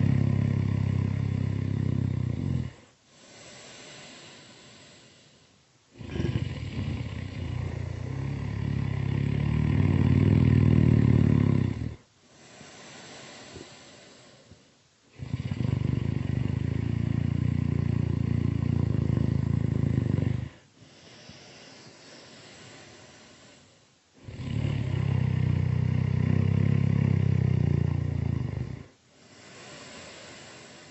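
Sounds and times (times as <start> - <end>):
low rattling snores: 0.0 - 5.3, 5.9 - 30.9
breath: 2.7 - 6.4, 12.2 - 14.8, 20.5 - 24.0, 29.1 - 30.9.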